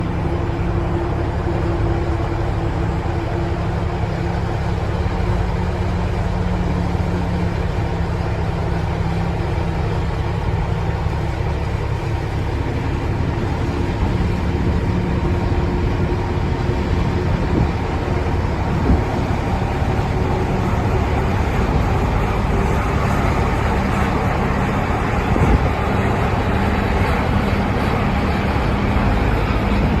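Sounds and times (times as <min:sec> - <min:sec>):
diesel engine drone: 0:00.0 - 0:30.0.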